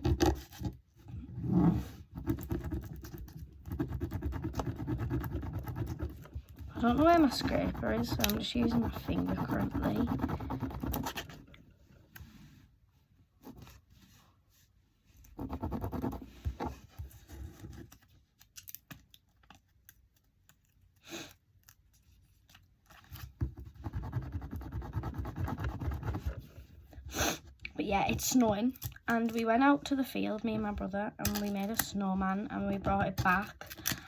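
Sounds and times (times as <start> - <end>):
fingertip rubbing vinyl on card: 1.4 - 11.4, 15.3 - 17.1, 23.6 - 26.5.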